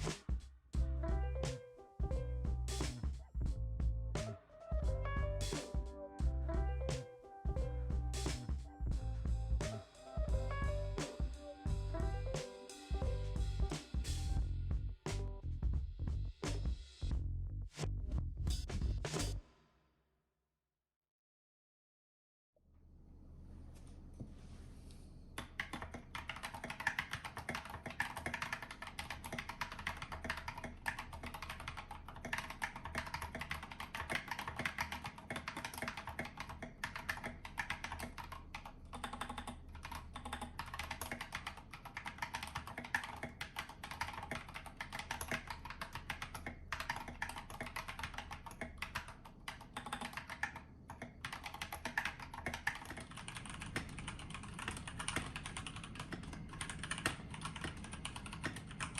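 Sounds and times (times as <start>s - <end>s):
mechanical keyboard typing: 25.4s - 58.9s.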